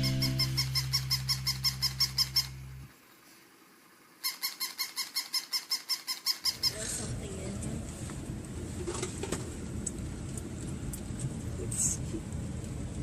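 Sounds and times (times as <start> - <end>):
rapid high squeaks: 0.0 - 2.7, 4.2 - 6.8.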